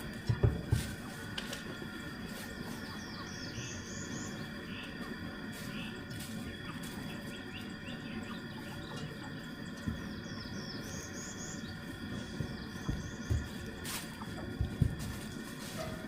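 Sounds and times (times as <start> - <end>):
low rumbling handling noise: 0.0 - 3.8, 8.8 - 16.0
high insect drone: 0.0 - 16.0
small birds chirping: 0.0 - 16.0.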